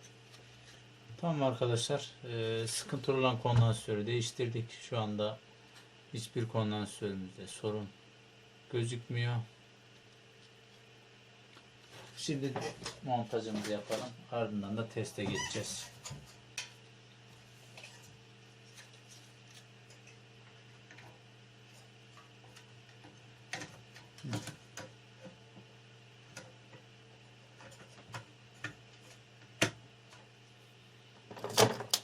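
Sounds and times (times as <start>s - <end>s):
low electrical hum: 0.0s - 32.0s.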